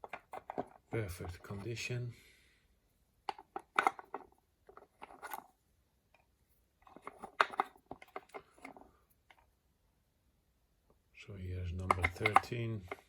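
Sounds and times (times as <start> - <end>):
small metal parts clicking and rattling: 0.0 - 1.7, 3.3 - 5.6, 6.8 - 8.9, 11.8 - 13.0.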